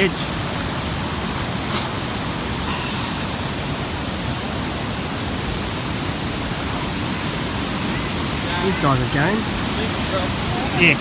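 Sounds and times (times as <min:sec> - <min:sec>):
waterfall rushing: 0:00.0 - 0:11.0.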